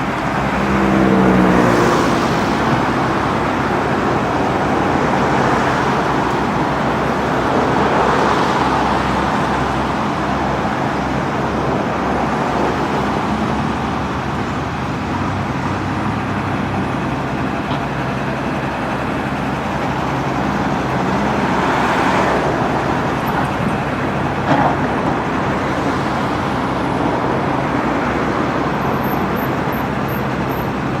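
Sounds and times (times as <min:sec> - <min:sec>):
wheel loader diesel engine running: 0:00.0 - 0:31.0.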